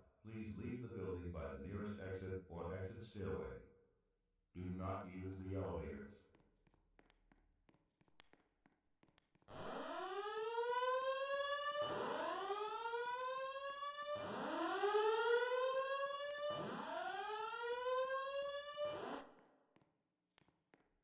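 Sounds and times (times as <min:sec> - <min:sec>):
fire alarm whoop tone: 0:09.5 - 0:19.3.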